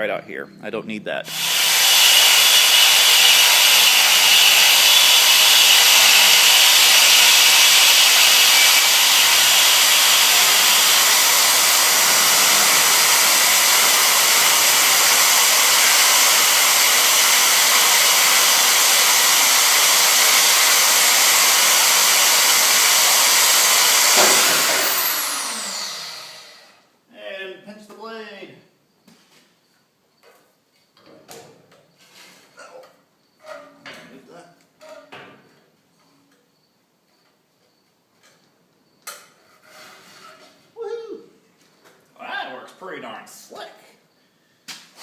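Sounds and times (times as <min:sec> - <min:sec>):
band saw cutting steel: 0:01.3 - 0:26.7
motor winding down whine: 0:01.3 - 0:26.7.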